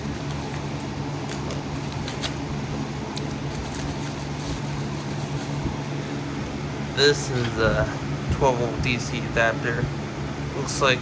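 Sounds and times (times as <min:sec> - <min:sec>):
package crinkling being opened: 0:00.0 - 0:06.6
low background hum: 0:00.0 - 0:11.0.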